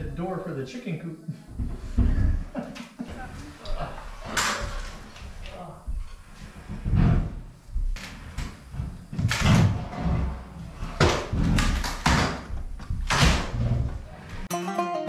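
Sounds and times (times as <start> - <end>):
metal panels banging and rattling: 3.8 - 14.5.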